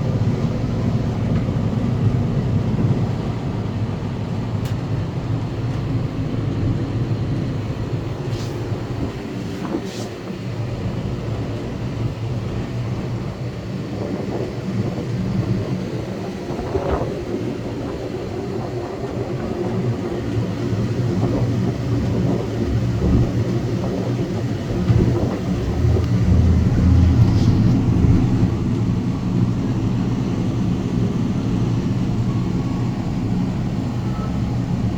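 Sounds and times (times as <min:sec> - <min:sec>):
low mechanical drone: 0:19.0 - 0:34.9.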